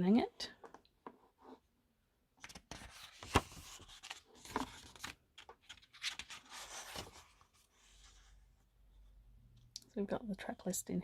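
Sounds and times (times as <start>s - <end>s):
card and plastic packaging rustling: 2.4s - 7.5s.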